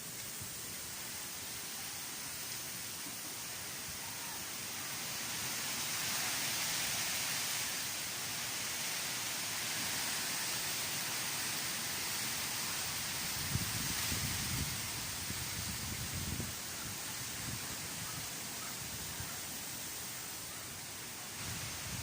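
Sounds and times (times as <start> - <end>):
strong storm wind blowing: 12.8 - 19.3, 21.4 - 22.0.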